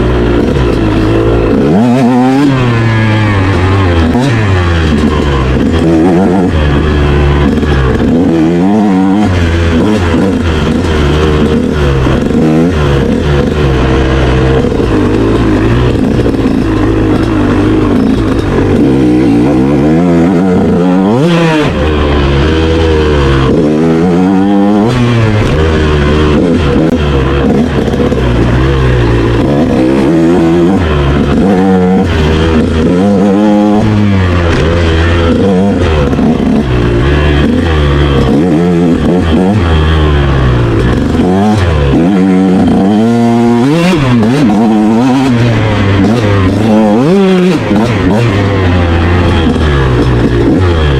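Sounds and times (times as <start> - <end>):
motorcycle engine revving: 0.0 - 50.9.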